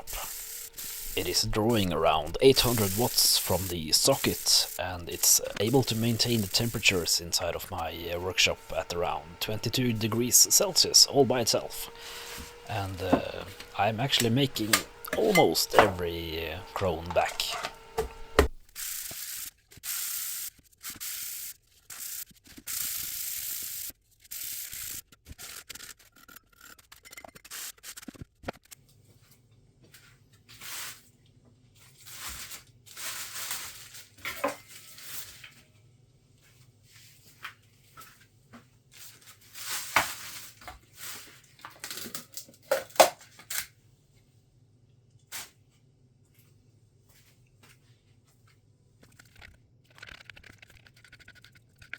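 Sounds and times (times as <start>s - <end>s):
short hissing bursts: 0.0s - 18.3s
faint low hum: 0.0s - 18.6s
hand rubbing and scraping: 0.0s - 18.7s, 49.0s - 51.9s.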